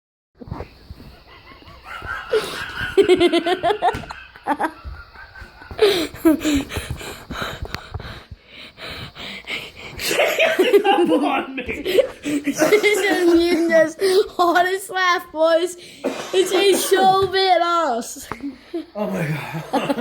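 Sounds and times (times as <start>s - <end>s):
man wheezing with laughter: 1.0s - 7.7s.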